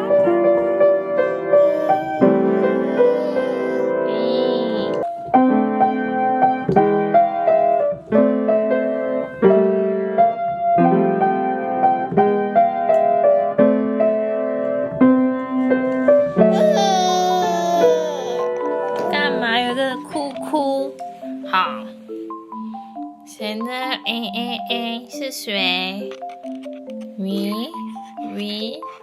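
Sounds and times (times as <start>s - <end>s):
slow piano chords: 0.0s - 29.0s.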